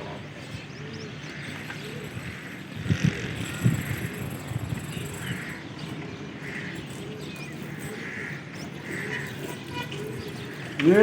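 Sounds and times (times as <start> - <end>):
pigeons cooing: 5.2 - 10.8.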